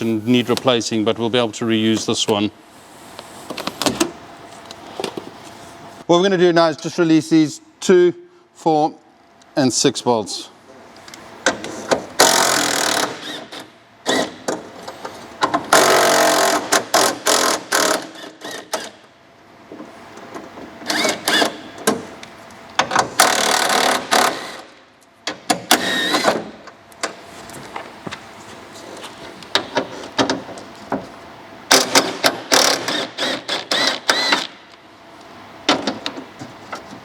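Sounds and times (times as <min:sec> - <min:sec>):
cordless power driver whirring: 0:32.6 - 0:34.5.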